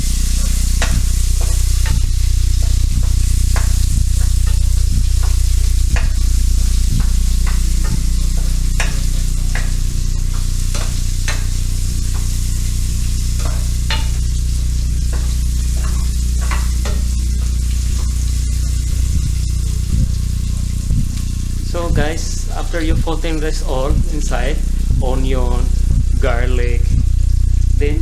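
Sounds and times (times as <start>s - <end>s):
spatula scraping a pan: 0.0s - 19.1s
food sizzling in a pan: 0.0s - 28.0s
steady low hum: 0.0s - 28.0s.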